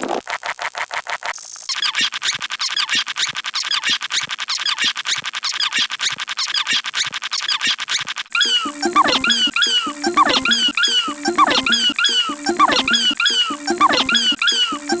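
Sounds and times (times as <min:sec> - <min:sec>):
high-pitched squeaky chirps: 0:07.4 - 0:15.0.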